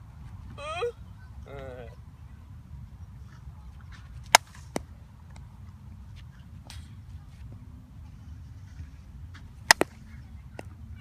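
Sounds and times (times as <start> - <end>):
low rumble of outdoor air: 0.0 - 11.0
bat hitting softball: 4.2 - 5.4, 9.6 - 10.7.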